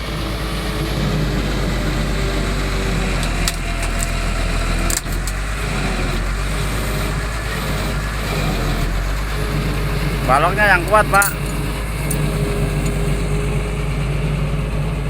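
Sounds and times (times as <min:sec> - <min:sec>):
diesel engine rumbling: 0:00.0 - 0:15.0.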